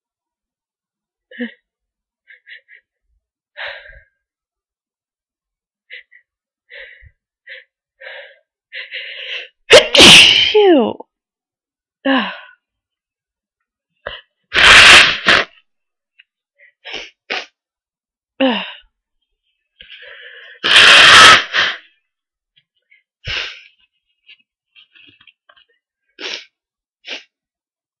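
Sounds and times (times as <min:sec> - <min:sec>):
person sneezing: 0:09.7 - 0:10.7, 0:14.5 - 0:15.6, 0:20.6 - 0:21.9.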